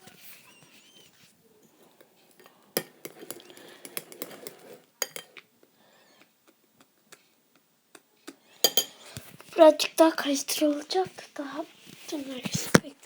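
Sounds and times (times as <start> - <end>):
slime being stirred: 0.7 - 5.4
spoon clinking against bowl: 2.0 - 5.4, 8.6 - 9.1.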